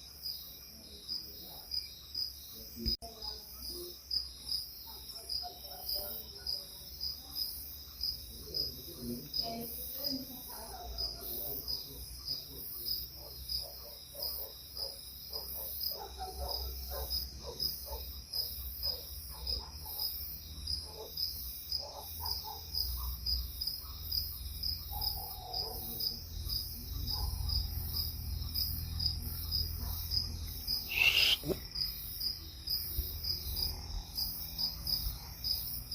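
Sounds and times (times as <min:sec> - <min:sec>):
insects chirping: 0:00.0 - 0:35.9
lower calls: 0:30.8 - 0:31.6.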